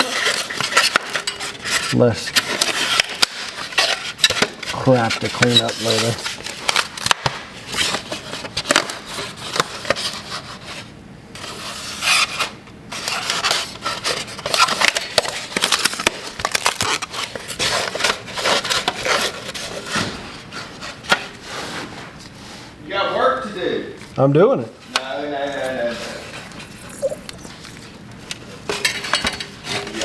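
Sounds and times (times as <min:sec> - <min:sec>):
cardboard crumpling and scraping: 0:00.0 - 0:10.8, 0:13.0 - 0:21.0.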